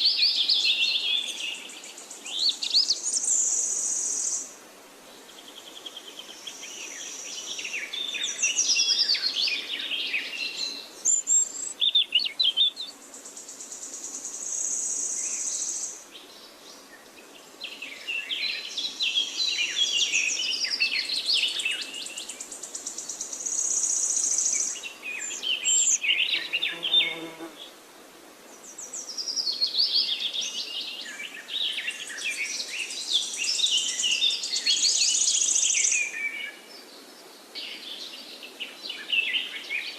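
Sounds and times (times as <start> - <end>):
small birds chirping and singing: 0.0 - 4.5, 5.2 - 27.6, 28.5 - 39.9
high insect buzz: 25.8 - 27.7.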